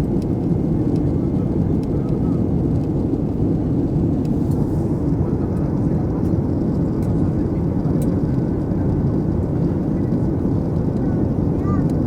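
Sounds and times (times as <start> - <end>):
jet engines rumbling in flight: 0.0 - 12.0.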